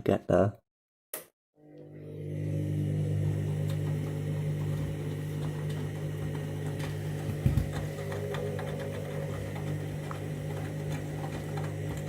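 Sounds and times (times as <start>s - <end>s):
washing machine motor humming: 1.6s - 12.0s.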